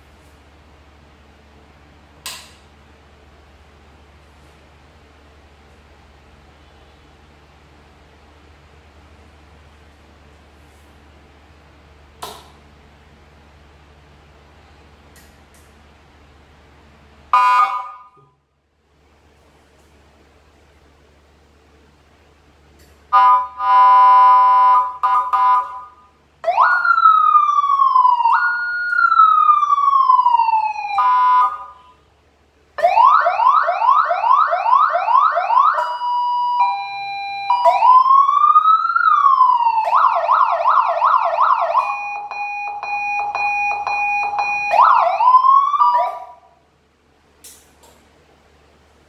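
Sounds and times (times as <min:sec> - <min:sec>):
electronic siren cycling tones: 0:23.1 - 0:32.0, 0:32.8 - 0:46.5.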